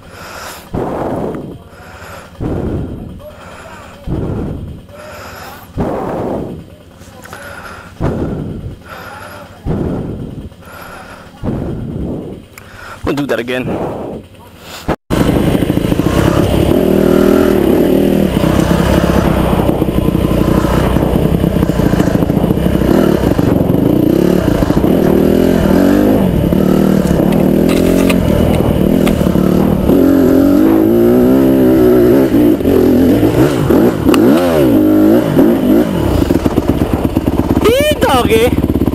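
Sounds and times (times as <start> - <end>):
dirt bike engine revving: 0.0 - 38.9.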